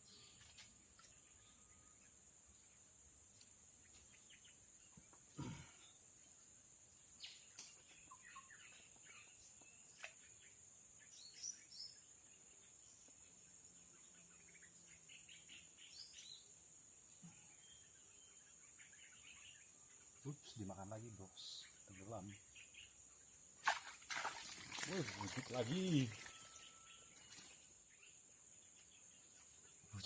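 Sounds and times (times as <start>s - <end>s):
bird chirps: 7.2s - 16.5s, 17.2s - 30.0s
high insect drone: 9.0s - 30.0s.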